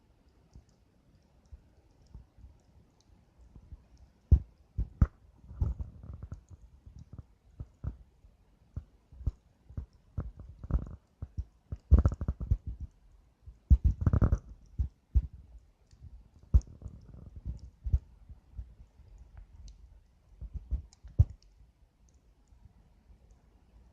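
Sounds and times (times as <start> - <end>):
campfire crackling and popping: 8.7 - 18.1, 19.1 - 22.2.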